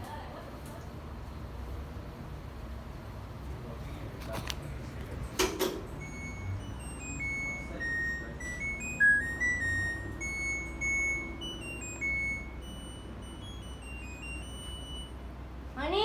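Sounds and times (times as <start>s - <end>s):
washing machine beep melody: 5.8s - 15.6s.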